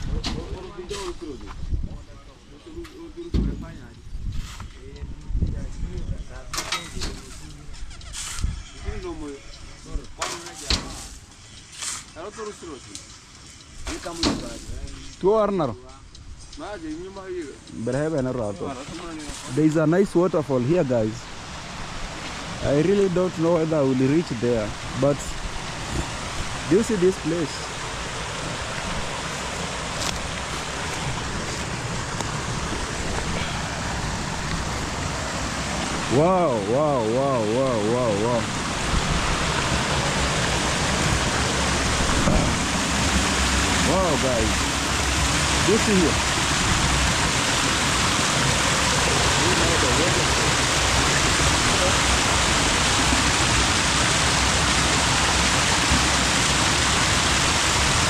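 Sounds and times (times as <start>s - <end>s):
wind buffeting microphone: 1.5s - 2.2s, 5.1s - 6.5s, 38.0s - 53.0s
waterfall rushing: 18.3s - 58.0s.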